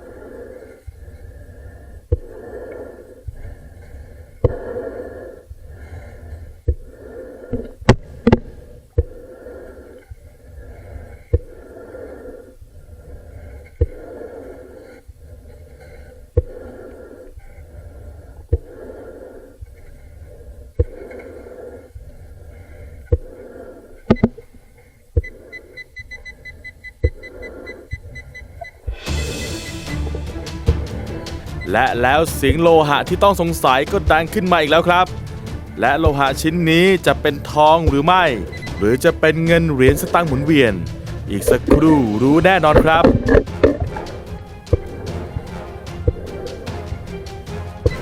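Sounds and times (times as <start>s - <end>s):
diver breathing underwater: 0.0s - 31.7s, 42.4s - 47.1s
metal detector beeping: 25.2s - 29.9s, 38.4s - 39.0s.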